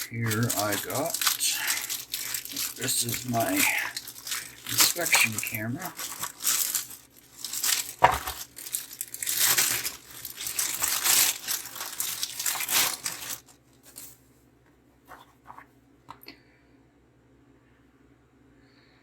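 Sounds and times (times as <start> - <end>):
packaging rustling and crinkling: 0.0 - 14.2.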